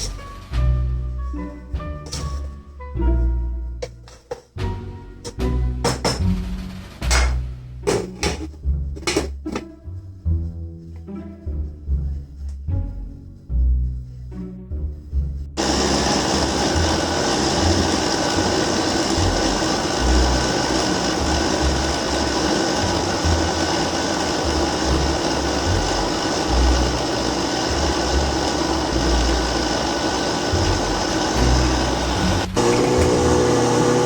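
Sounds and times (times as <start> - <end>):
small electric motor whirring: 15.6 - 34.0.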